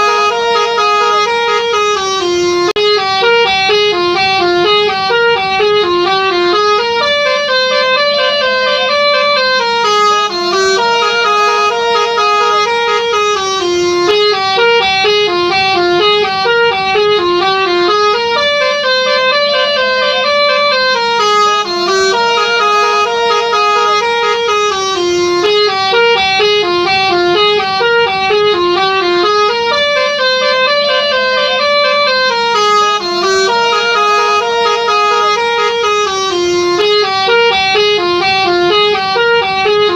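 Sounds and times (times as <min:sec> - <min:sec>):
bus horn playing a melody: 0:00.0 - 0:39.9.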